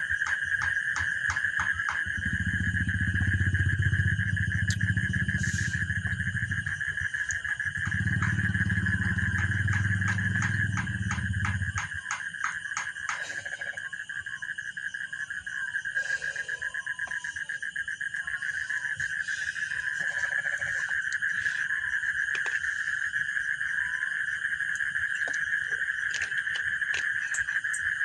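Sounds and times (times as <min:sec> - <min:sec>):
night insects trilling: 0:00.0 - 0:28.0
low motor engine running: 0:01.2 - 0:12.6.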